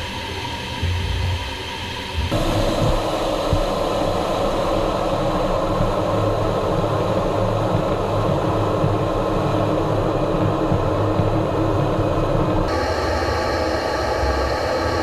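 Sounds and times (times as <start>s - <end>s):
jet engine roaring: 12.7s - 15.0s.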